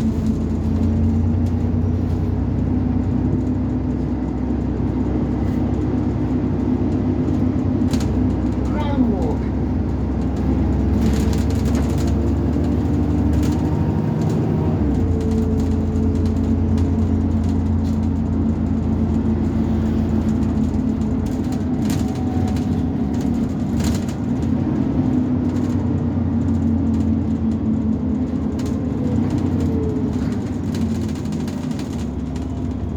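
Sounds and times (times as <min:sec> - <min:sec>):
bus engine droning: 0:00.0 - 0:32.9.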